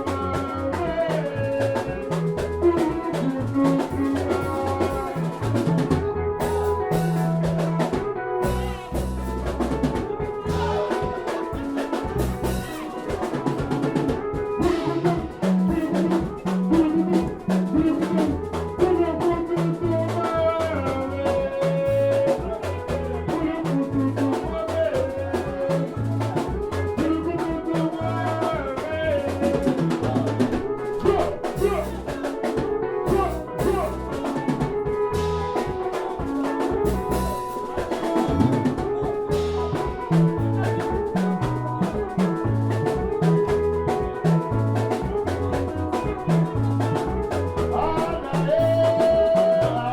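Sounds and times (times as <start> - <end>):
drum kit beat: 0.0 - 49.9
dance music: 10.5 - 11.8.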